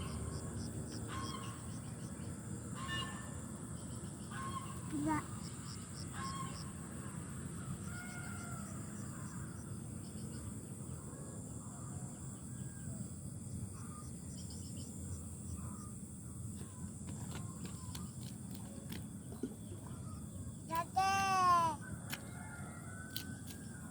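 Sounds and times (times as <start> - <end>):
faint bird calls: 15.6 - 23.8.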